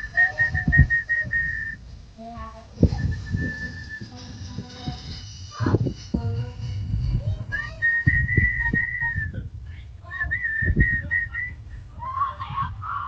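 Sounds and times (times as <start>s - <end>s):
person whistling: 0.0s - 1.8s, 2.8s - 4.3s, 7.6s - 9.4s, 10.2s - 11.6s
low thumps: 0.0s - 12.8s.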